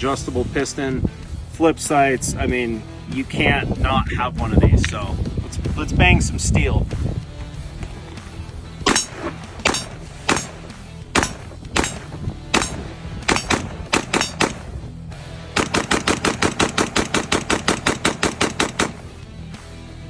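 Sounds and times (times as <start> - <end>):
rifle shots: 8.8 - 14.8, 15.6 - 19.1.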